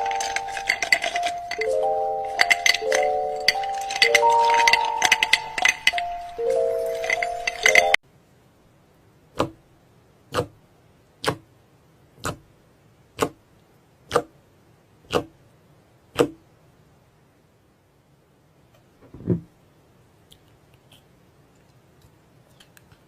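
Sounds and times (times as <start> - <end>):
background music: 0.0 - 8.0.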